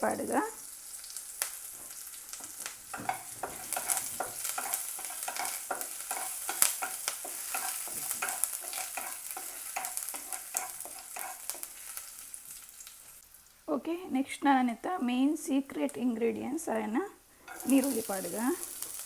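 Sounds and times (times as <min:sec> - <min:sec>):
hot oil sizzling in a pan: 0:00.0 - 0:13.7, 0:17.4 - 0:19.0
spatula scraping a pan: 0:01.6 - 0:12.3, 0:17.4 - 0:19.0.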